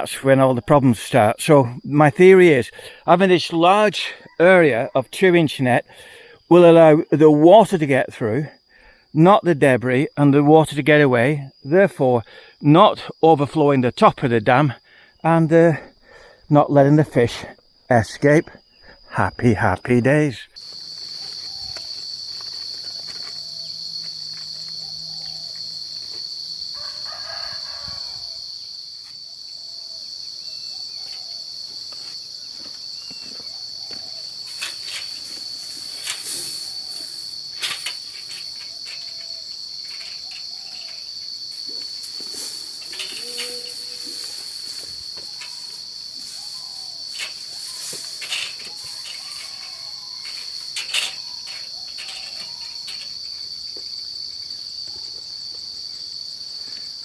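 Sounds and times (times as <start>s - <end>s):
insects droning: 0.0s - 57.0s
rooster crowing: 26.7s - 28.6s, 40.2s - 52.9s.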